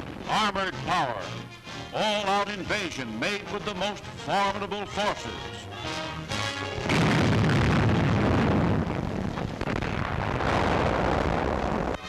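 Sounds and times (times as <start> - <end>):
rumble of explosions: 6.7 - 12.0.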